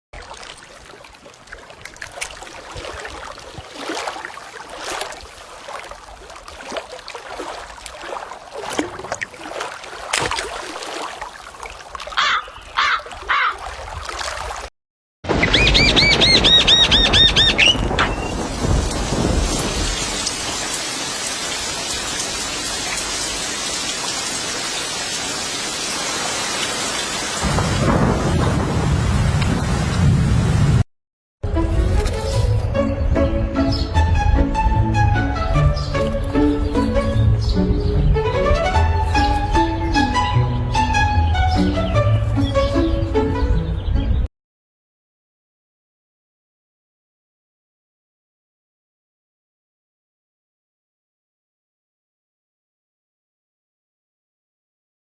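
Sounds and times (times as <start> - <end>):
short bird calls: 12.1 - 13.6
heavy rain hiss: 18.4 - 30.5.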